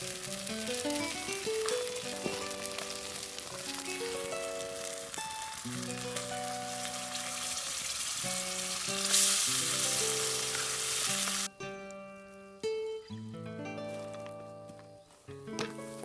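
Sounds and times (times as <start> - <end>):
food sizzling in a pan: 0.0 - 11.5
background music: 0.0 - 16.0.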